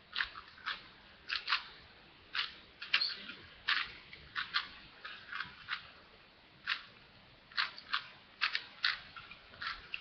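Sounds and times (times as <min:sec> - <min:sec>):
puzzle cube layers clicking: 0:00.1 - 0:05.9, 0:06.6 - 0:10.0.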